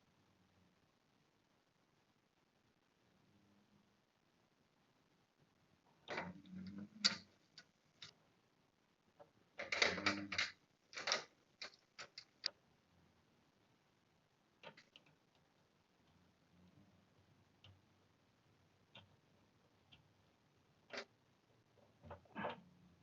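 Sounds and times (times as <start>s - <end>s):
clicks and metallic knocks: 9.2s - 12.6s.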